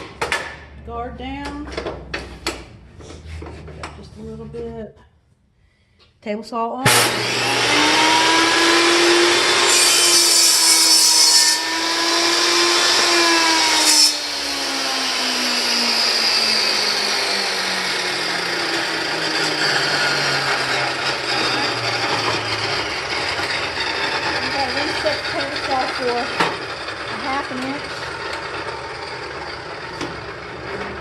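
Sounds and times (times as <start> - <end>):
table saw blade cutting: 6.8 - 31.0
table saw motor hum: 6.8 - 31.0.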